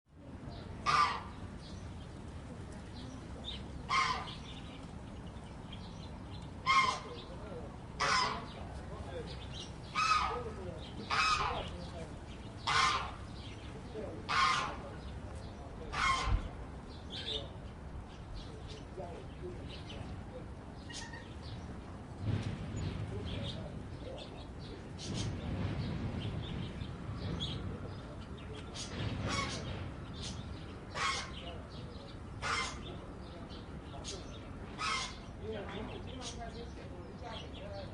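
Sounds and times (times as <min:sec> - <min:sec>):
large bird harsh calls: 0:00.6 - 0:02.0, 0:03.4 - 0:17.6, 0:20.8 - 0:21.7, 0:22.8 - 0:36.6.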